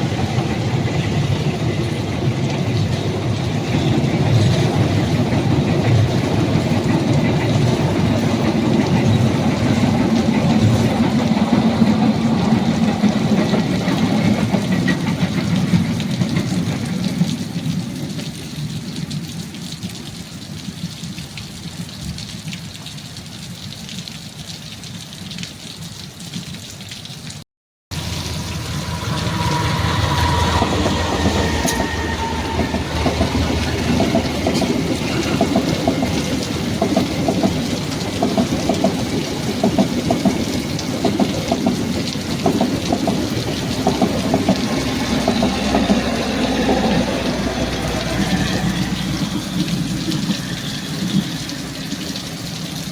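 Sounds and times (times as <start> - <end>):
train running by: 0.0 - 18.5, 27.9 - 52.9
engine noise: 27.9 - 39.5, 42.3 - 52.6
brief steady tone: 28.0 - 34.4
heavy rain hiss: 28.0 - 52.9.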